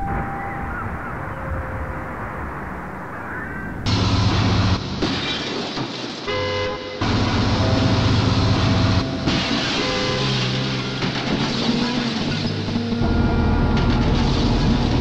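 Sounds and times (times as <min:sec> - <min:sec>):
higher steady tones: 0:07.0 - 0:09.4
low horn-like droning tone: 0:07.0 - 0:11.0, 0:12.8 - 0:14.0.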